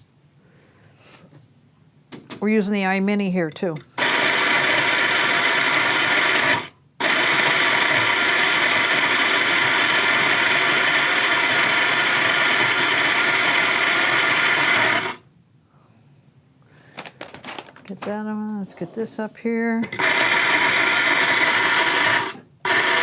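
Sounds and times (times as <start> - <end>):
coffee grinder grinding beans: 3.9 - 15.2, 19.8 - 23.0.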